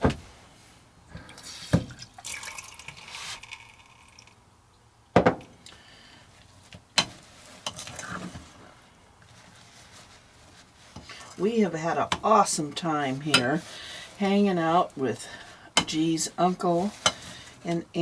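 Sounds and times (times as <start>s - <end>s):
water trickling into a bowl: 1.2s - 4.4s.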